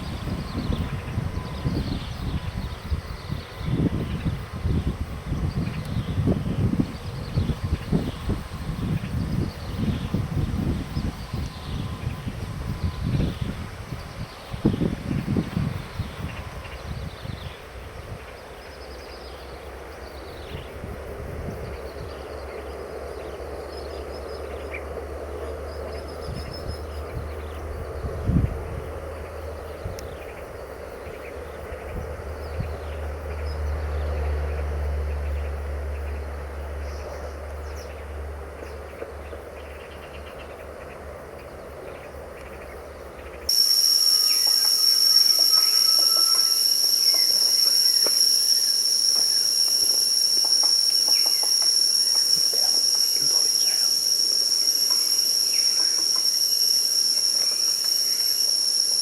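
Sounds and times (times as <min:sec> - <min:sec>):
high-pitched insect drone: 0:00.0 - 0:38.0, 0:39.4 - 0:59.0
bird chirps and clicks: 0:47.0 - 0:53.2.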